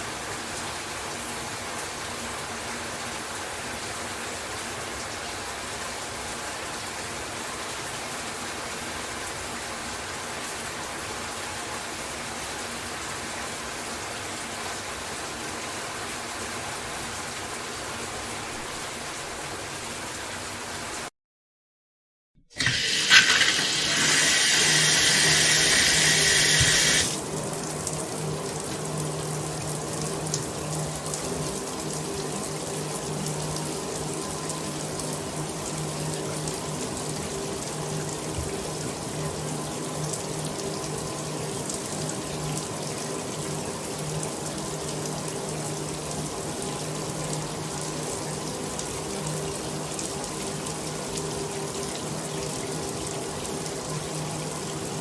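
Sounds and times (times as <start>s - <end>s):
shower running: 22.5s - 55.0s
loud hissing shower spray: 22.6s - 27.2s.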